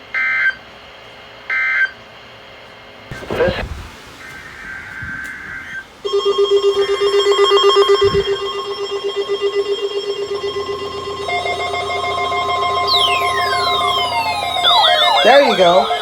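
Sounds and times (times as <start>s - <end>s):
high warning tone: 3.1s - 16.0s
low hum: 3.1s - 16.0s
rapidly pulsing low buzz: 3.1s - 16.0s
steady electronic tone: 5.6s - 16.0s.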